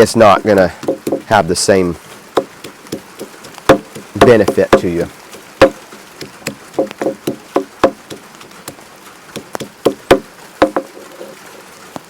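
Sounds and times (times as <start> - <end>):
garlic being crushed: 2.4 - 8.8.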